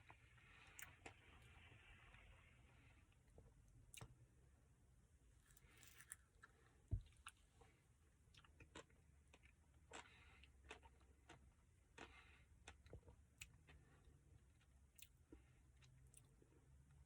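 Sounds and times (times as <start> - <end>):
person chewing: 5.4 - 7.4, 8.3 - 16.5.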